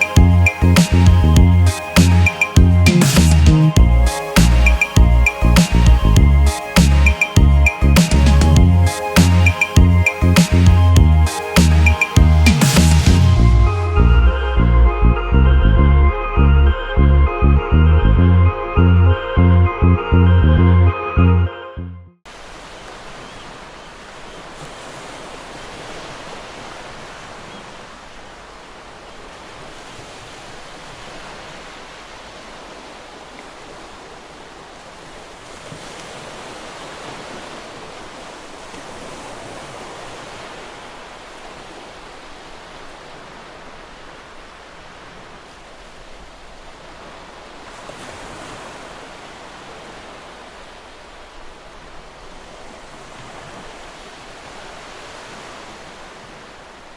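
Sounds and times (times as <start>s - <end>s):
sea waves washing in: 0.0s - 15.3s, 22.3s - 56.9s
wind: 0.0s - 56.9s.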